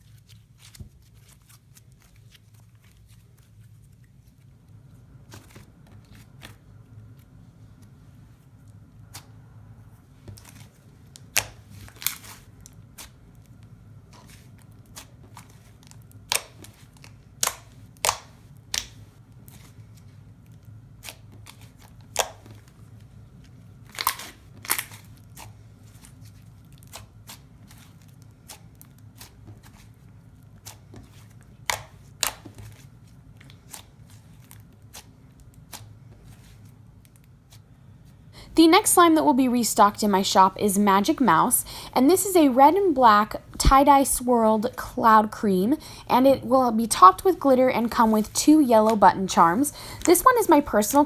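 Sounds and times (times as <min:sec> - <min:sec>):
slime being squished by hand: 0:23.8 - 0:37.6.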